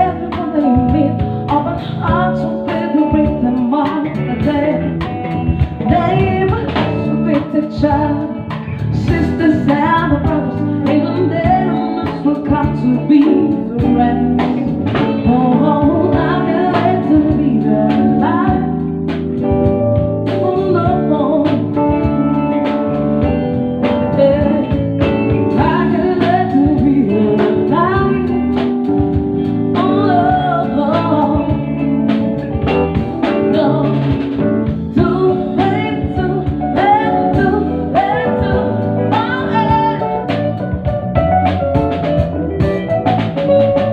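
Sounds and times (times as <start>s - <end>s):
person singing: 0.0s - 19.0s, 24.0s - 28.9s, 29.7s - 31.9s, 33.2s - 40.7s
drum beats: 0.0s - 43.9s
live band music: 0.0s - 43.9s.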